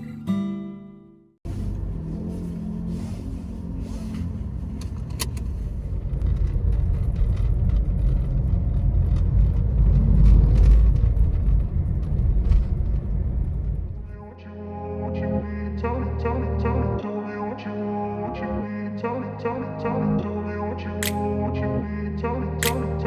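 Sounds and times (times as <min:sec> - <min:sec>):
car engine and road noise: 0:01.5 - 0:14.3.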